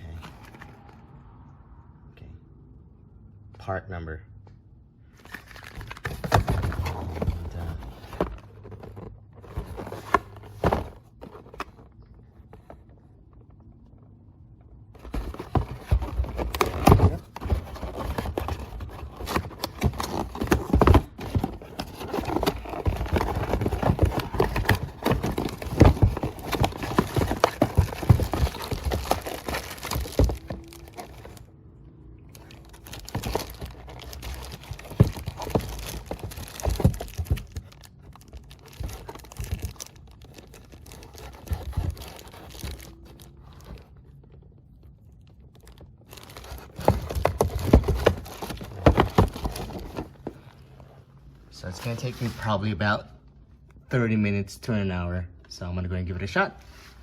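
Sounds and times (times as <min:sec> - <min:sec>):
packaging rustling and crinkling: 0:05.2 - 0:13.4, 0:15.0 - 0:31.5, 0:32.3 - 0:52.4.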